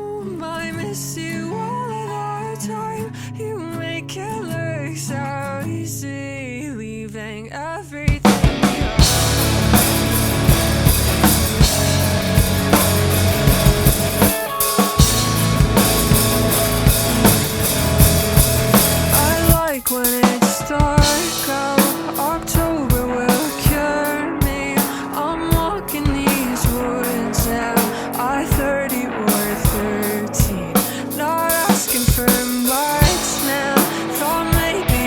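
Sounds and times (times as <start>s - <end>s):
person singing: 0.0s - 35.0s
drum kit played hard: 8.1s - 35.0s
rock band playing: 8.2s - 35.0s.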